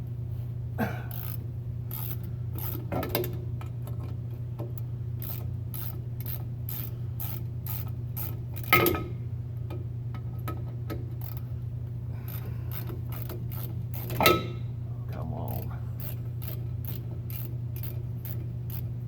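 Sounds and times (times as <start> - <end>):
steady low hum: 0.0 - 19.0
metal clank: 8.6 - 9.2, 14.1 - 14.7
socket ratchet clicking: 16.0 - 18.9.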